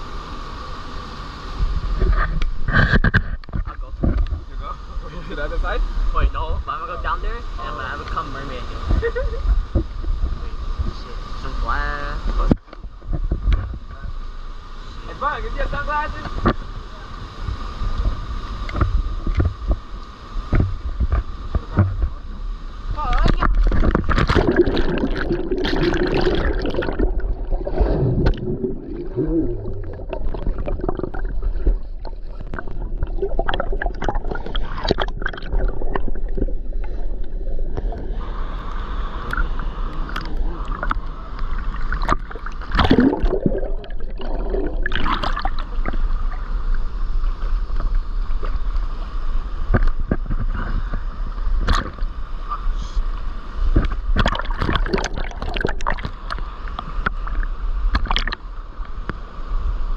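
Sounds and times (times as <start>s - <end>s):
water sloshing and splashing: 22.9s - 52.2s, 53.6s - 58.5s.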